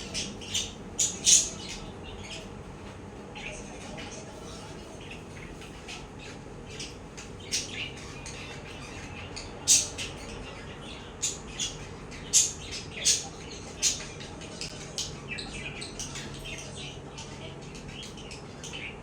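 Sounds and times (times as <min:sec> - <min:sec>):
budgerigar chirping and squawking: 0:00.0 - 0:02.5, 0:06.7 - 0:18.9.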